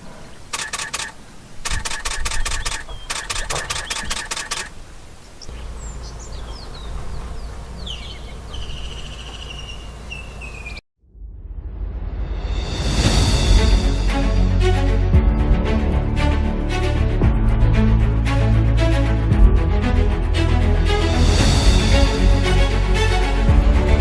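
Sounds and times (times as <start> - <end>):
bird chirps: 0.5 - 10.8
steady low rumble: 11.0 - 24.0.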